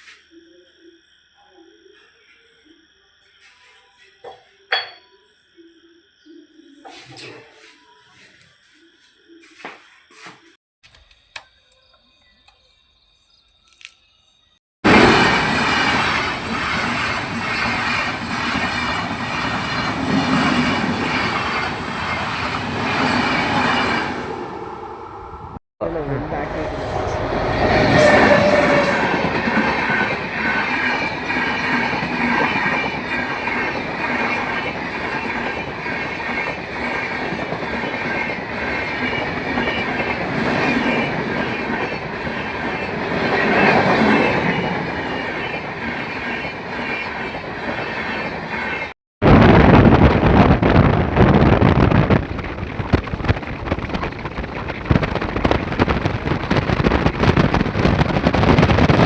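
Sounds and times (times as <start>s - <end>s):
train rumbling on rails: 14.8s - 59.0s
gusting rushing noise: 14.9s - 33.9s, 49.2s - 59.0s
faint wheel squeal: 27.4s - 30.1s.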